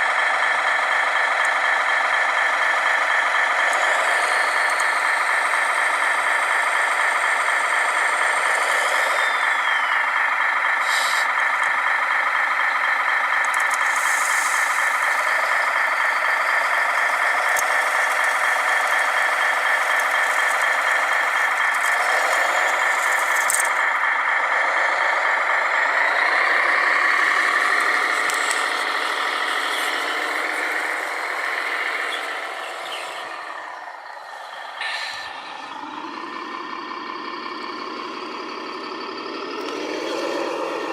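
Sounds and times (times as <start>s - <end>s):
electric motors whining: 0.1s - 38.2s
sharp clicks: 13.4s - 14.0s, 16.7s - 23.9s.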